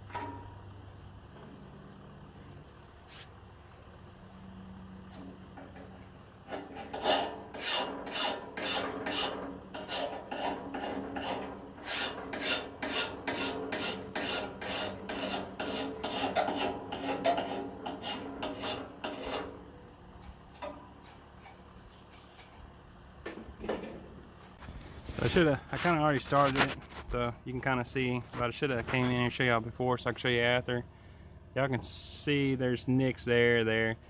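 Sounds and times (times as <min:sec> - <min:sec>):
metal file rasping on steel blade: 0:06.4 - 0:19.6.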